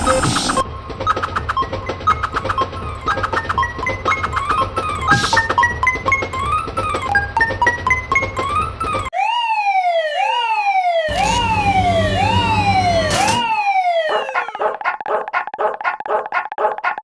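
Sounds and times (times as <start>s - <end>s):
cartoon siren falling wails: 3.0s - 14.8s
fast-pulsing electronic alarm: 8.1s - 14.6s.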